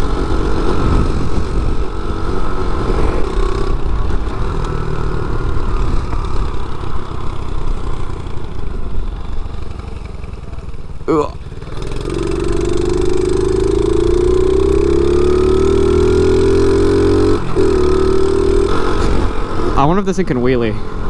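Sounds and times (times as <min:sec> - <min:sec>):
small motorbike engine running: 0:02.8 - 0:15.8.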